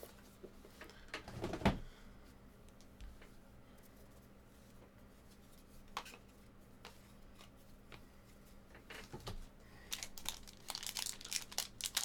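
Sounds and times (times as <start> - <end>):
packaging crinkling: 9.9 - 12.0.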